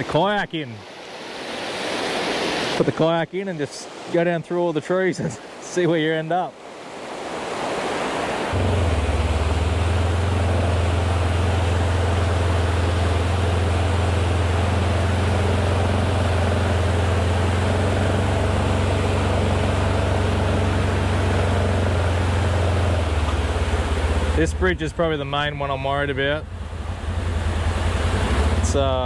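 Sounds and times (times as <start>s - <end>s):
floodwater rushing: 0.0s - 29.0s
strong low drone: 8.6s - 29.0s.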